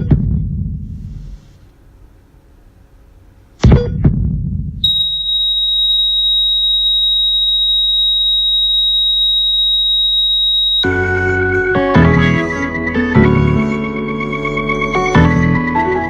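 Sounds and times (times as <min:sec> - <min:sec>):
high-pitched electronic tone: 0:04.8 - 0:15.6.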